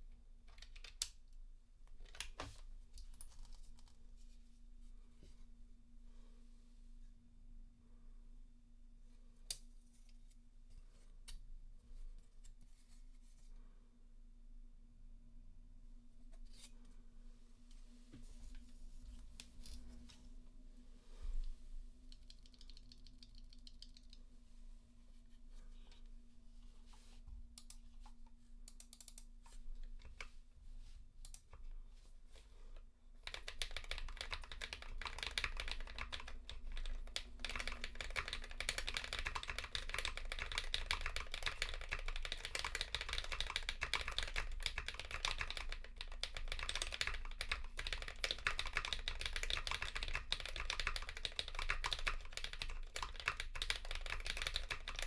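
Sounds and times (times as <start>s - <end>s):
scattered keyboard clicks: 0.4s - 4.0s, 22.1s - 24.3s, 28.7s - 30.4s, 33.2s - 55.0s
typing on mechanical keyboard: 0.5s - 1.2s, 2.0s - 4.0s, 22.1s - 24.2s, 33.2s - 55.0s.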